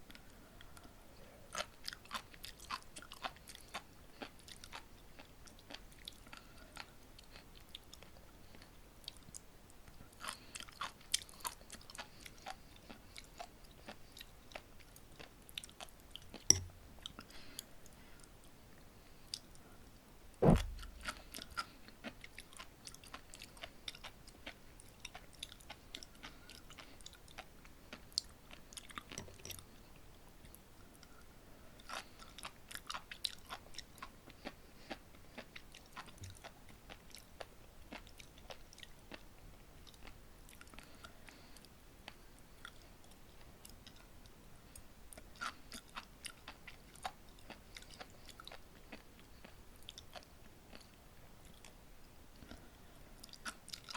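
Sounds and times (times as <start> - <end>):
chewing crackly seaweed beads: 0.0 - 19.7, 20.8 - 53.9
sharp knock: 20.4 - 21.0.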